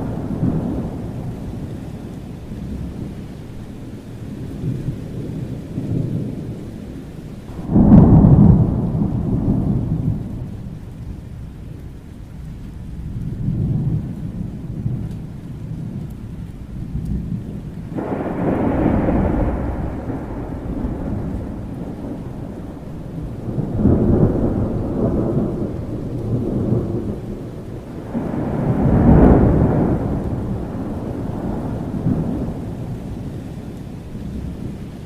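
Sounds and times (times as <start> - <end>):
rolling thunder: 0.0 - 35.0
steady rain: 0.0 - 35.0
loud thunder clap: 7.5 - 10.7, 17.9 - 27.3, 28.0 - 33.2.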